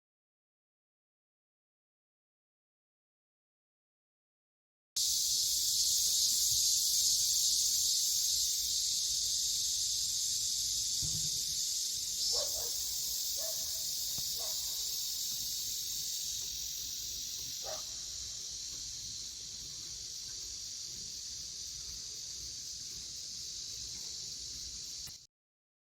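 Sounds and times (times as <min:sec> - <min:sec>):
night insects chirping: 0:05.0 - 0:25.3.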